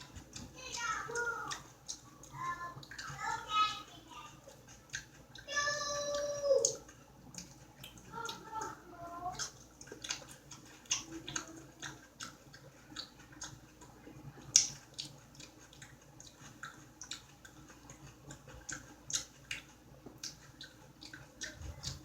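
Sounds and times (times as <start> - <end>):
person chewing food: 0.0 - 22.0
wet mouth clicks and lip smacks: 4.6 - 5.5, 9.4 - 22.0.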